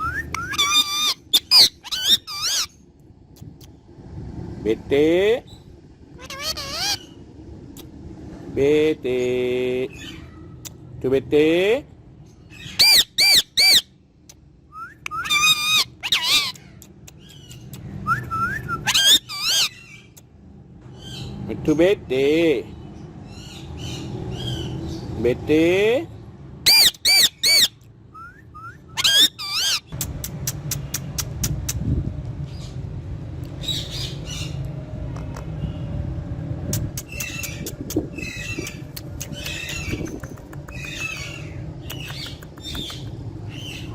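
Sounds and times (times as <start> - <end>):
parrot whistling: 0.0 - 2.7, 12.8 - 13.8, 14.7 - 16.5, 18.0 - 19.7, 26.7 - 29.8
parrot squawking: 0.0 - 2.8, 6.1 - 7.2, 12.5 - 13.9, 15.1 - 17.6, 18.3 - 20.1, 26.7 - 27.8, 28.6 - 29.9, 36.8 - 43.9
low hum: 0.0 - 12.7, 27.7 - 43.9
sharp clicks: 38.9 - 41.2, 41.9 - 43.2.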